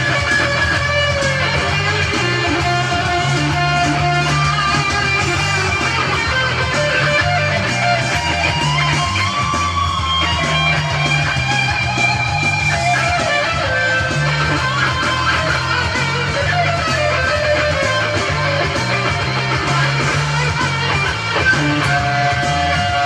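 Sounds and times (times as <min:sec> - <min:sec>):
electric guitar lead line: 0:00.0 - 0:23.0
repeating bass backing: 0:00.0 - 0:23.0.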